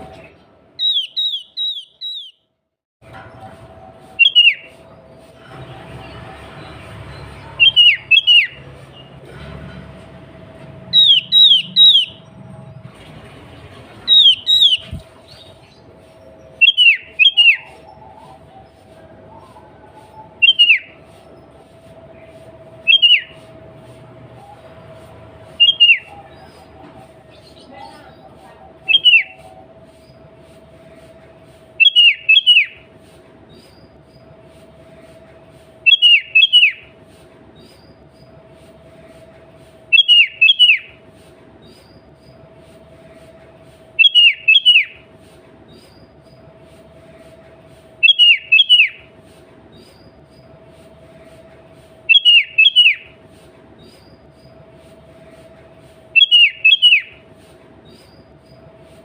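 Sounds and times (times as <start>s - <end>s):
bulbul calling: 0.8s - 2.4s, 4.2s - 4.8s, 7.6s - 9.0s, 10.9s - 12.3s, 14.1s - 15.6s, 16.5s - 21.0s, 22.8s - 23.5s, 25.5s - 27.2s, 31.8s - 32.8s, 44.0s - 45.0s, 48.0s - 49.0s, 52.1s - 53.1s, 56.2s - 57.2s.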